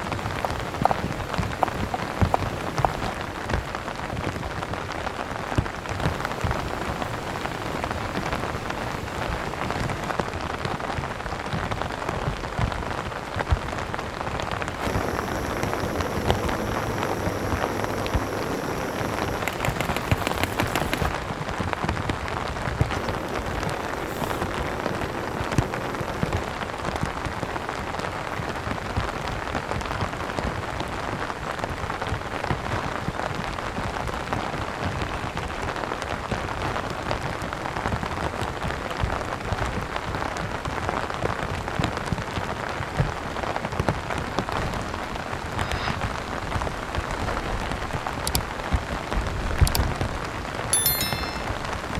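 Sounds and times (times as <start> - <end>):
steady rain falling: 0.0 - 50.6.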